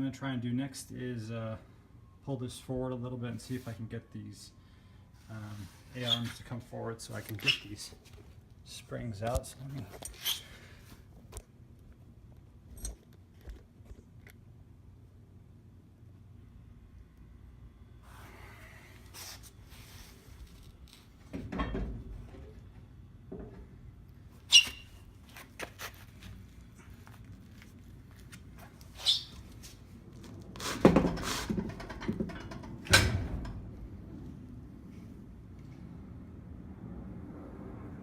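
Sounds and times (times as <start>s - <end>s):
metal parts clanking and knocking: 31.0s - 33.6s.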